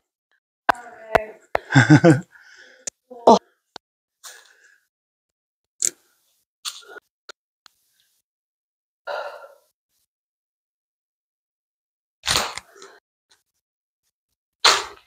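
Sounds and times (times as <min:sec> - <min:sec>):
person breathing: 0:01.6 - 0:02.9, 0:09.1 - 0:09.7.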